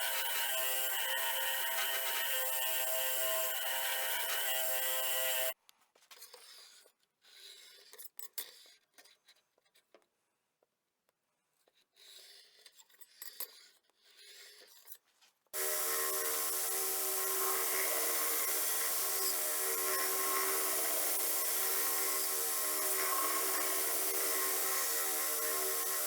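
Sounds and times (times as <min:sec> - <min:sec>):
belt grinder running: 0:00.0 - 0:05.6, 0:15.6 - 0:26.0.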